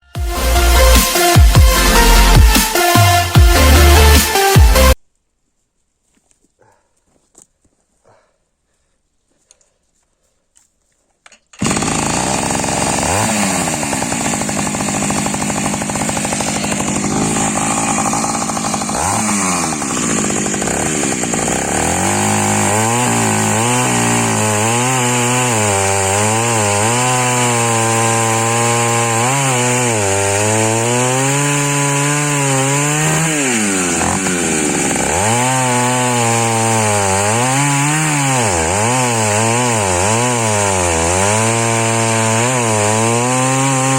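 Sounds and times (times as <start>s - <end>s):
chainsaw running: 0.1s - 5.0s, 11.5s - 43.9s.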